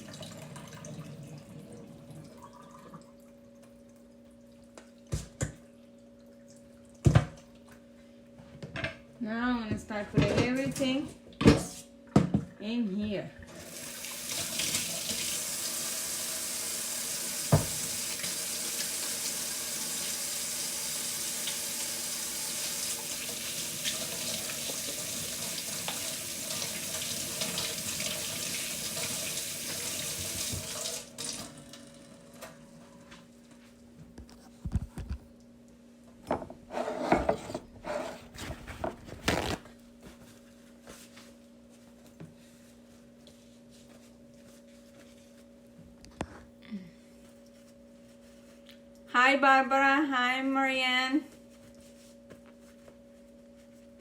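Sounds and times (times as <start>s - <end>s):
faint steady hum: 0.0s - 30.2s, 30.8s - 54.0s
tap running into sink: 17.4s - 18.3s.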